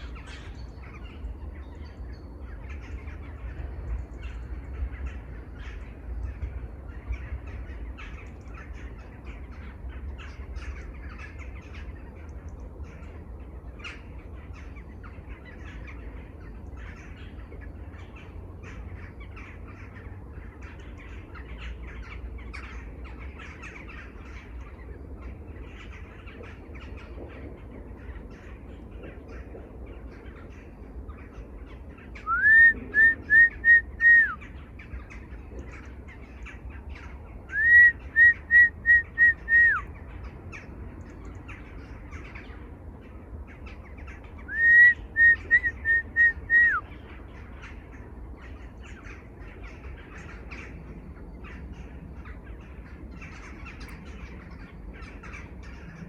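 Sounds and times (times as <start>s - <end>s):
many birds chattering: 0.0s - 56.0s
bird whistling call: 32.2s - 34.5s, 37.5s - 39.9s, 44.5s - 46.9s.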